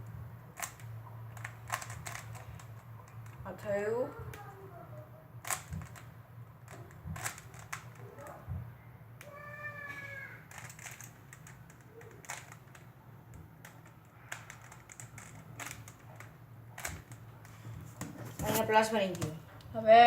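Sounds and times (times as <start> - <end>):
plastic puzzle cube clicking: 0.6 - 3.4, 5.4 - 6.1, 6.7 - 8.0, 10.5 - 12.9, 13.6 - 17.6.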